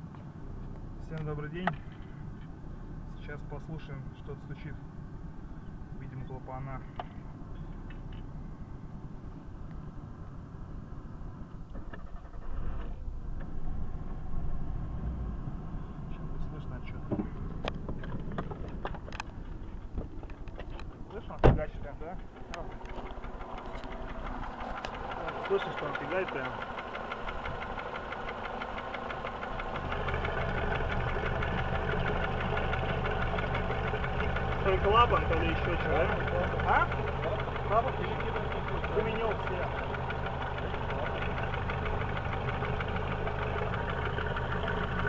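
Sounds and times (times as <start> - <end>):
car engine running: 0.0 - 45.0
fast steady engine knock: 22.2 - 45.0.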